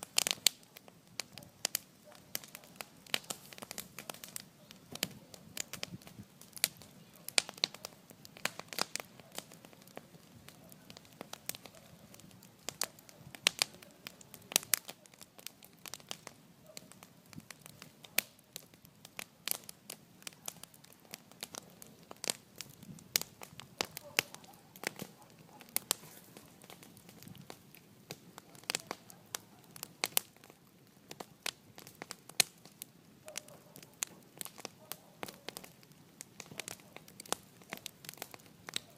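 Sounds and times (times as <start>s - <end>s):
bonfire crackling: 0.0s - 38.9s
sharp pops and snaps of fire: 0.0s - 38.9s.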